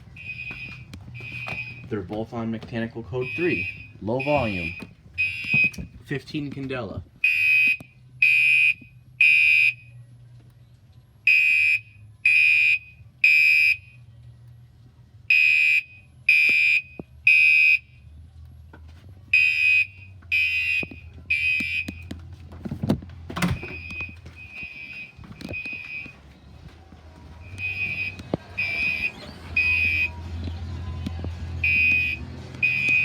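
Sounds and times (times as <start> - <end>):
fire alarm horn blasts: 0.2 - 1.9, 3.2 - 5.8, 7.2 - 9.9, 11.3 - 14.0, 15.3 - 17.9, 19.3 - 22.0, 27.4 - 30.1, 31.6 - 33.0.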